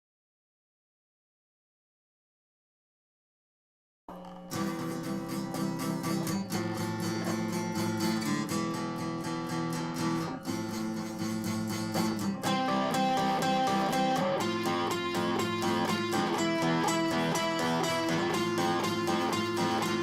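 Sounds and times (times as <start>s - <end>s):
acoustic guitar strumming: 4.1s - 20.0s.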